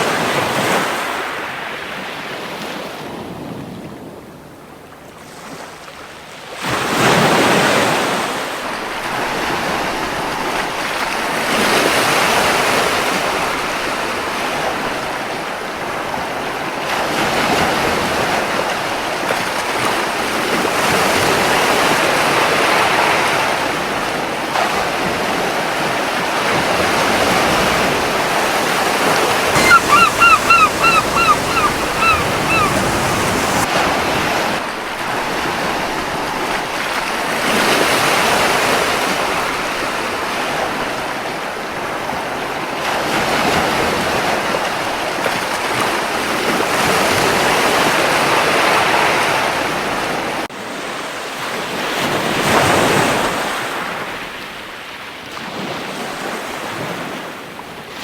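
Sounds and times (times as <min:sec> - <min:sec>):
ocean waves on beach: 0:21.4 - 0:34.6
gull calling: 0:29.5 - 0:33.6.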